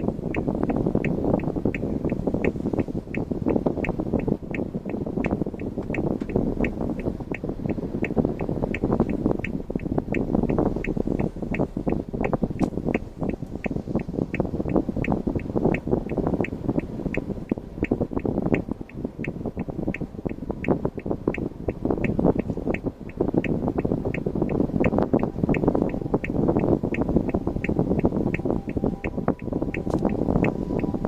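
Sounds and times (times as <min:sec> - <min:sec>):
engine and road rumble: 0:00.0 - 0:31.0
turn-signal flasher ticking: 0:00.0 - 0:31.0.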